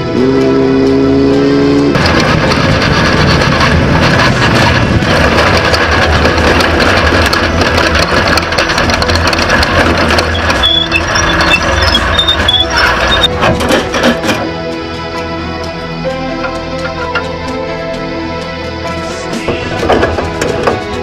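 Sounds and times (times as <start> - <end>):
race vehicle engine running hard: 0.0 - 21.0.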